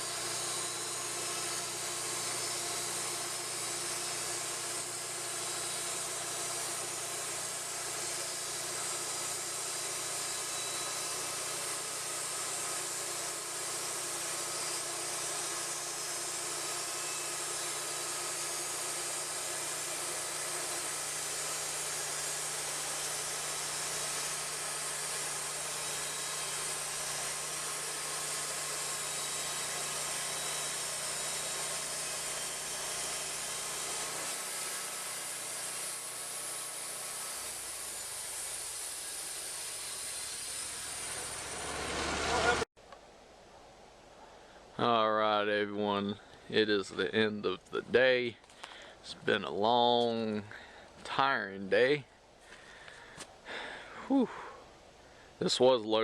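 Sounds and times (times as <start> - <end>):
engine running steadily: 41.2 - 42.6.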